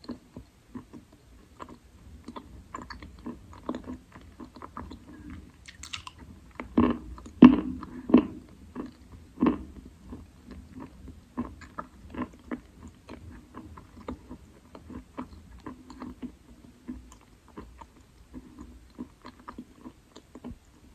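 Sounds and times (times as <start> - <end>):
moist chewing crunches: 1.6 - 6.7.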